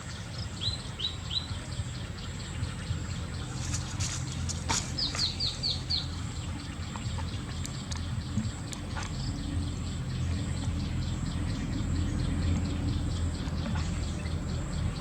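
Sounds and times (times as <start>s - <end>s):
steady low hum: 0.0s - 15.0s
bird chirping: 4.9s - 8.6s.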